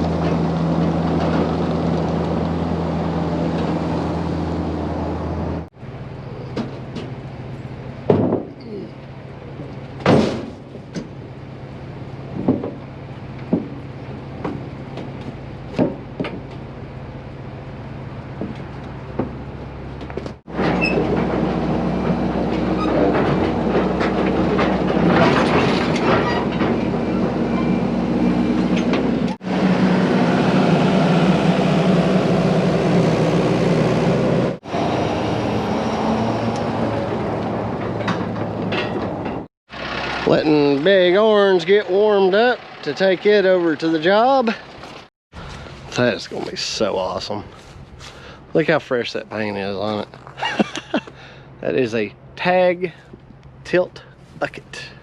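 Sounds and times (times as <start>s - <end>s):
heavy equipment engine running: 0.0s - 8.1s, 9.0s - 51.6s
rattling clattering metal: 20.5s - 27.8s, 37.6s - 41.0s.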